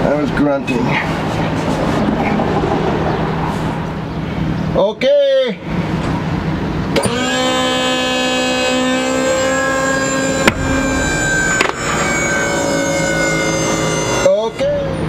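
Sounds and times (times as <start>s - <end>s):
hydraulic pump motor whining: 6.9s - 15.0s.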